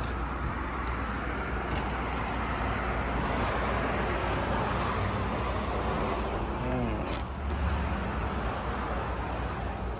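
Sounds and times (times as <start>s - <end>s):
road traffic hum: 0.0s - 9.9s.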